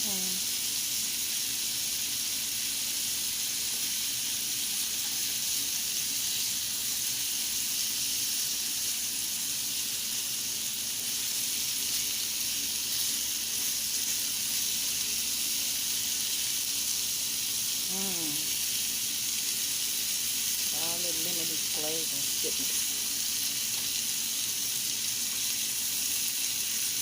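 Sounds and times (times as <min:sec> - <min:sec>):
chicken sizzling in a pan: 0:00.0 - 0:27.0.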